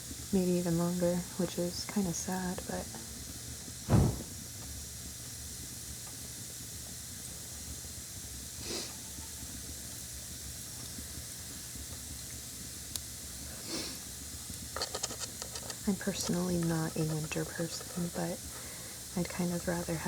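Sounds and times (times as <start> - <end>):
steady hiss: 0.0 - 20.0
breath puff on microphone: 3.9 - 4.4.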